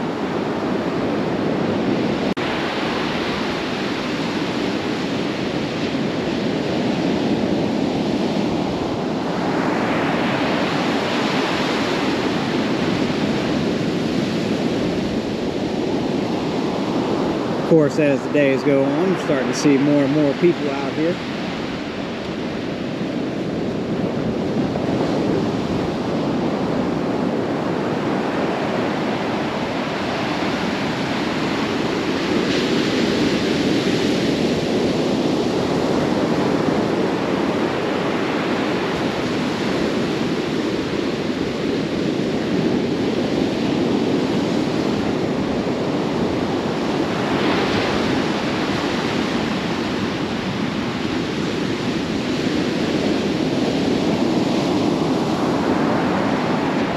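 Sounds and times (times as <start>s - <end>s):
ocean surf breaking waves: 0.0s - 56.9s
wave crashes: 17.3s - 22.9s.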